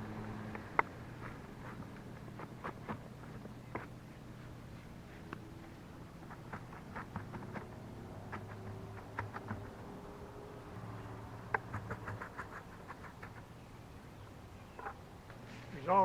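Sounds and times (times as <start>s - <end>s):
rapid ticks: 6.2s - 10.0s, 11.5s - 13.6s.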